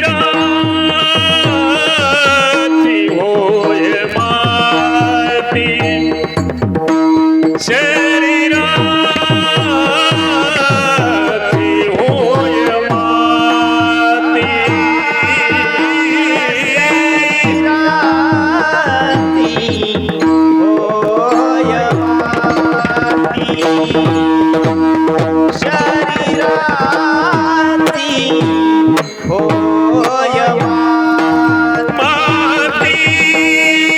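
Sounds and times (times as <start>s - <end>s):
man singing devotional melody: 0.0s - 33.9s.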